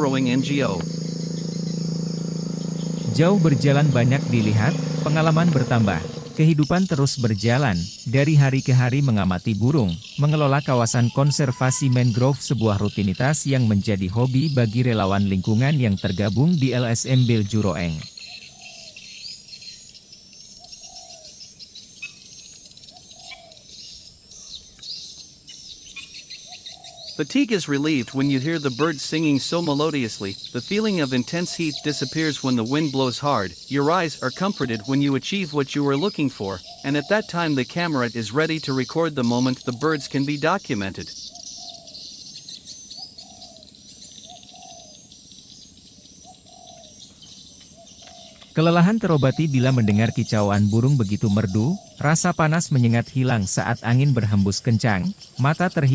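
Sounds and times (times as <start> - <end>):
dove cooing: 0.0 - 8.3, 9.8 - 19.1, 20.6 - 21.4, 22.9 - 23.8, 26.0 - 42.1, 42.9 - 45.1, 46.2 - 52.8
birds chirping and calling: 0.0 - 55.9
high insect drone: 0.0 - 55.9.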